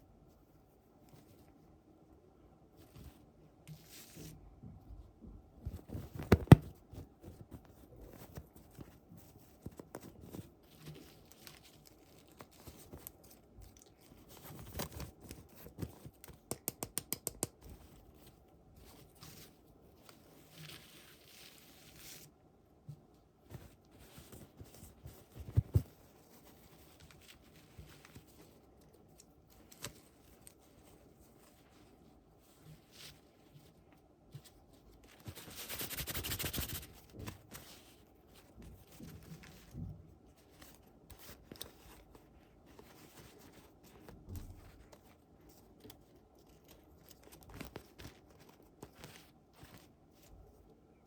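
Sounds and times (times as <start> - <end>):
plastic clicks and taps: 16.4 - 17.7.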